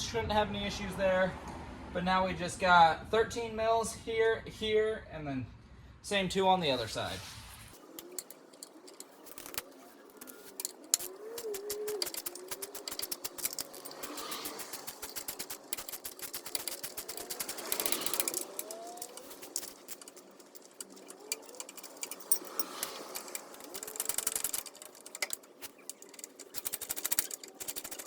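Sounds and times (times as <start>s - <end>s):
ratchet wrench clicking: 7.8s - 28.0s.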